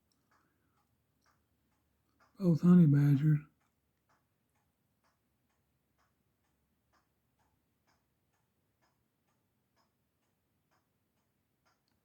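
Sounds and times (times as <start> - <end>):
faint ticking: 0.0 - 12.0.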